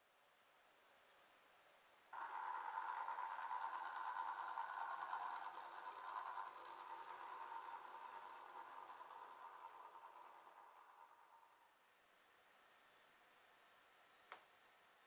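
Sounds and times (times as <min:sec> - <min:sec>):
small electric motor whirring: 0:02.2 - 0:11.8.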